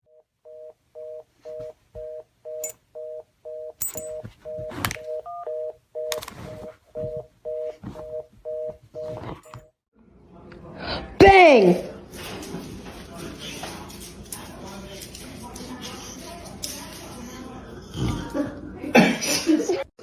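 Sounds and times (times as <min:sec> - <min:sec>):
telephone busy tone beeping: 0:00.1 - 0:09.7.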